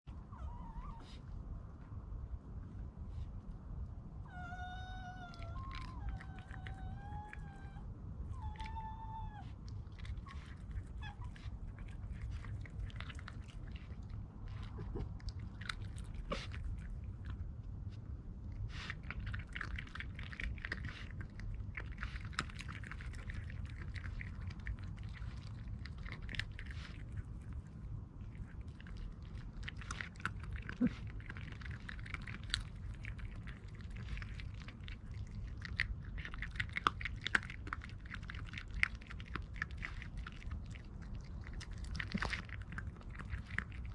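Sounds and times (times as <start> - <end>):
animal chewing and crunching food: 0.1 - 43.9
fox cub whining: 0.2 - 1.3, 4.2 - 11.7.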